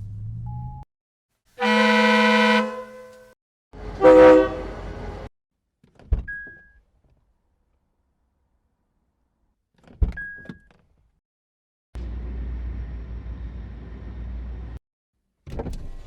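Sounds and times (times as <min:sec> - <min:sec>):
car horn honks: 0:01.6 - 0:03.3, 0:03.9 - 0:04.8.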